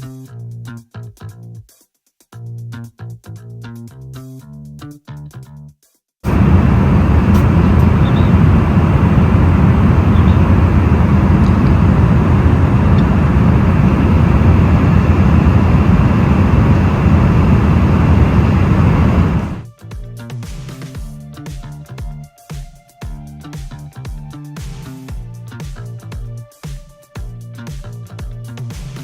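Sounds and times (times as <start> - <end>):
airliner cabin engine rumble: 6.3 - 19.6.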